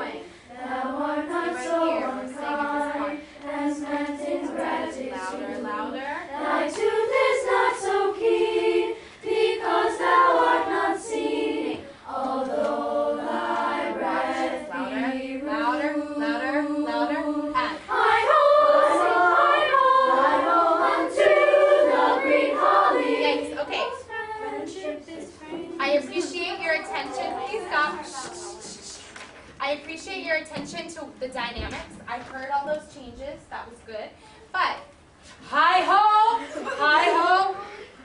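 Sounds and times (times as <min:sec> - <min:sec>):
choir singing: 0:00.0 - 0:28.7.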